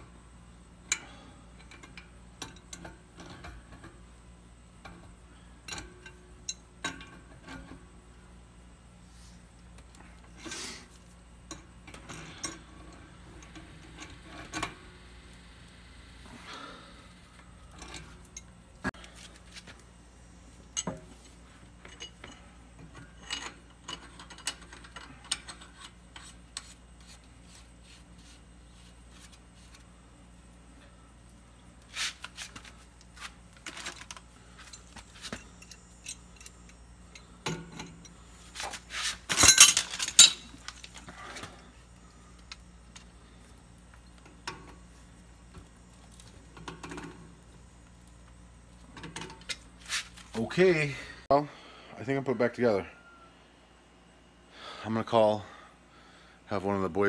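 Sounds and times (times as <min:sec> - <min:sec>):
metal tools and pipe fittings clinking: 0:00.9 - 0:03.9, 0:11.4 - 0:14.8, 0:17.5 - 0:18.6, 0:20.7 - 0:26.8, 0:33.7 - 0:41.3.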